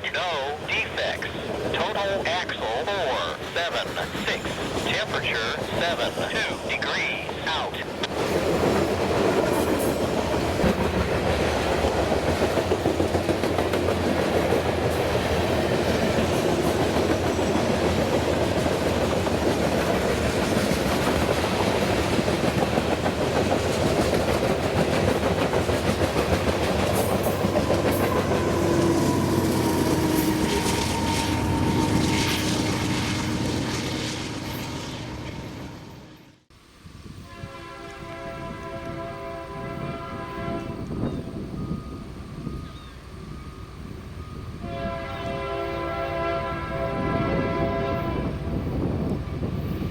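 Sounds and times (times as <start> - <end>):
freight train rumble: 0.0 - 49.9
wheels clickety-clack on rails: 1.2 - 34.1.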